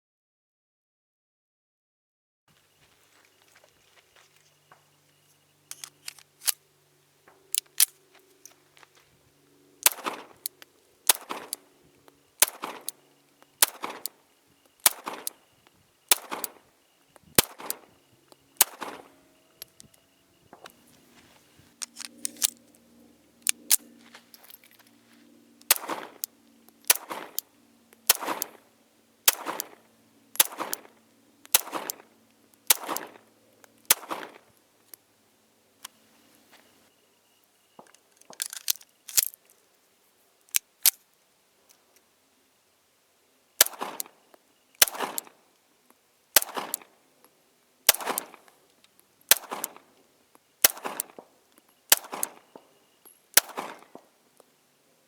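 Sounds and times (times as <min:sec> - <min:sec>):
pistol shots: 0:09.8 - 0:11.7, 0:12.4 - 0:14.2, 0:14.8 - 0:15.5, 0:16.1 - 0:16.7, 0:17.4 - 0:19.8, 0:25.7 - 0:33.3, 0:33.9 - 0:34.5, 0:43.6 - 0:44.2, 0:44.8 - 0:45.4, 0:46.4 - 0:47.0, 0:47.9 - 0:48.5, 0:49.3 - 0:49.9, 0:50.6 - 0:51.3, 0:51.9 - 0:52.8, 0:53.4 - 0:54.1.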